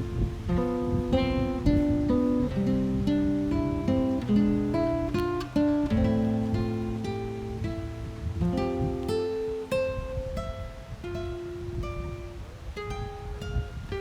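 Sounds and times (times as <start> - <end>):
acoustic guitar melody: 0.0 - 14.0.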